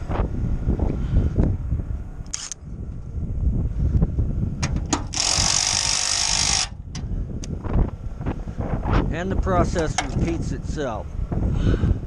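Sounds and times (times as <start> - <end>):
wind rumble on microphone: 0.0 - 12.0
sharp clicks: 2.3 - 2.6.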